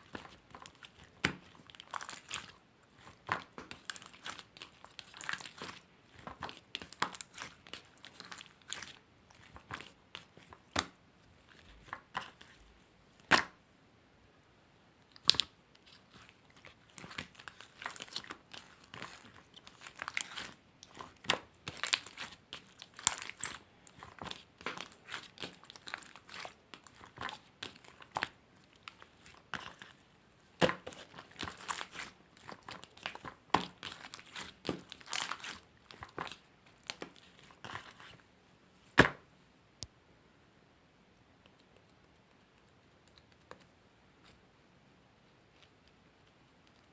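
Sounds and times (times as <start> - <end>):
slime squished by hand: 0.0 - 12.6, 15.1 - 30.0, 30.6 - 38.1.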